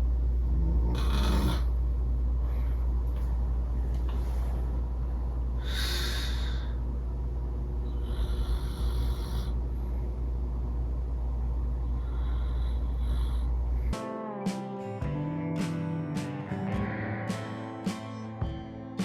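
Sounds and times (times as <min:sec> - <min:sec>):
steady low hum: 0:00.0 - 0:19.0
man snoring heavily: 0:00.5 - 0:01.7, 0:05.6 - 0:06.8, 0:07.9 - 0:09.6, 0:12.0 - 0:13.6.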